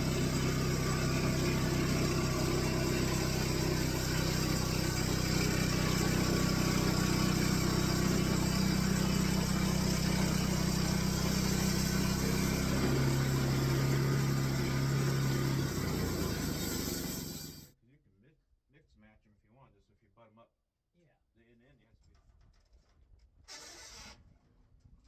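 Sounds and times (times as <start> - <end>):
sawmill engine running: 0.0 - 17.7.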